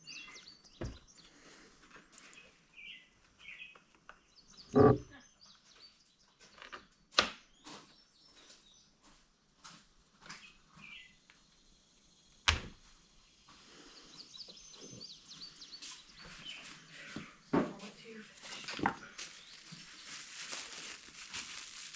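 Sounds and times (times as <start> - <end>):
birds chirping: 0.0 - 6.9, 10.3 - 12.4, 13.2 - 21.9.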